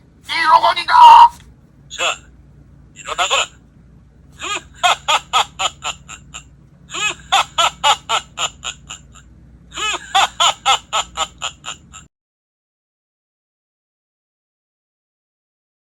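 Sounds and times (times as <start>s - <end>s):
alarm clock cartoon voice laughing: 3.0s - 3.6s, 4.5s - 9.2s, 9.8s - 12.1s.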